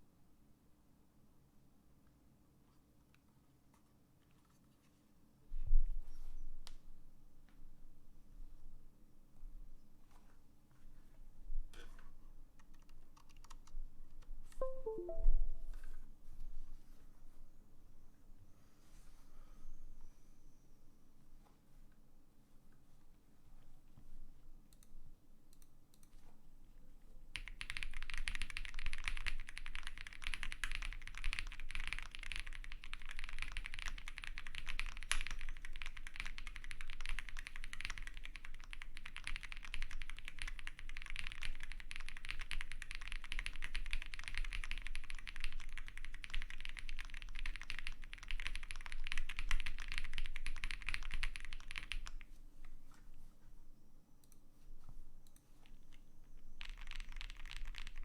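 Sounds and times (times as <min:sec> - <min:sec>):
mechanical keyboard typing: 0:12.6 - 0:13.8, 0:27.4 - 0:52.3, 0:56.5 - 0:58.0.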